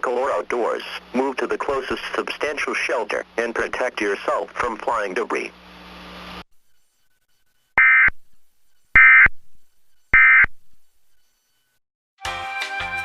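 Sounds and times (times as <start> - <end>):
screechy digital data tones: 7.8 - 8.2, 9.0 - 10.8
music: 12.2 - 13.0.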